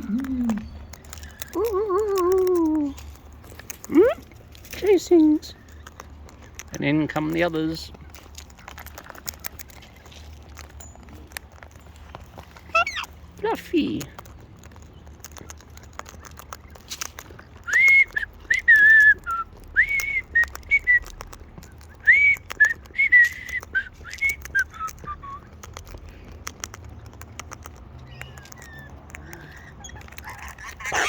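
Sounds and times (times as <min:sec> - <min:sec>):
person whistling: 0:17.7 - 0:21.1, 0:22.0 - 0:25.4.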